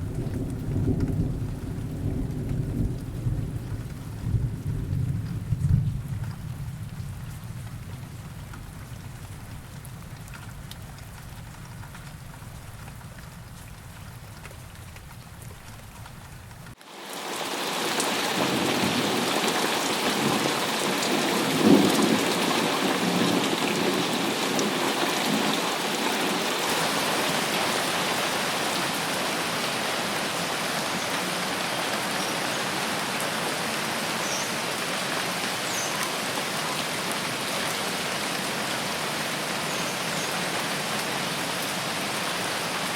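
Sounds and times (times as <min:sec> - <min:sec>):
thunder rumble: 0:00.0 - 0:16.8
heavy rain hiss: 0:00.0 - 0:42.9.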